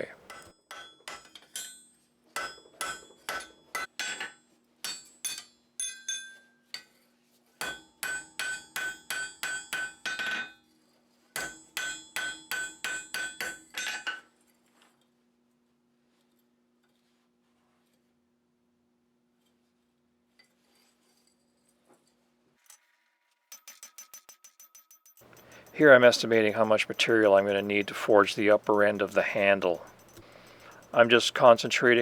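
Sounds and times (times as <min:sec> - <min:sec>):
hammer ringing on anvil: 0:00.3 - 0:04.1, 0:04.8 - 0:06.5, 0:07.6 - 0:10.5, 0:11.4 - 0:14.0, 0:23.5 - 0:32.0.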